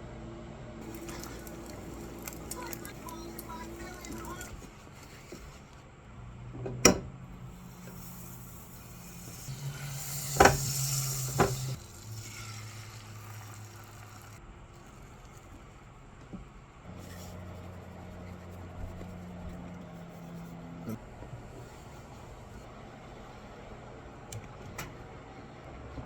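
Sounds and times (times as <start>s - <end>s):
food sizzling in a frying pan: 0.8s - 2.8s, 7.9s - 14.4s.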